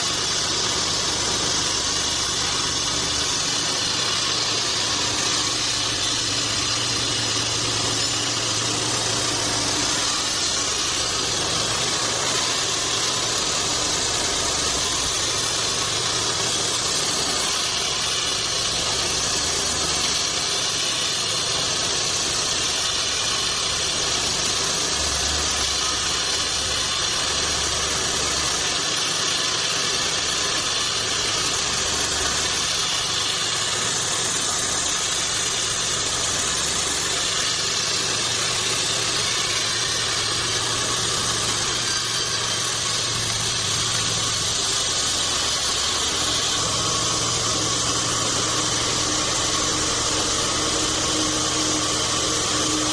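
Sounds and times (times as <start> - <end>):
band sawmill running: 0.0 - 52.9.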